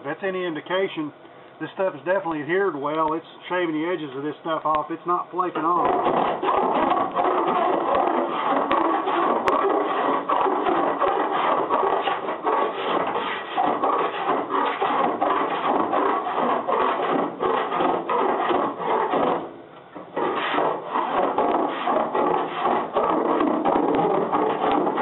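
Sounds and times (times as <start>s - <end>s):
file rasping on metal: 5.8s - 25.0s.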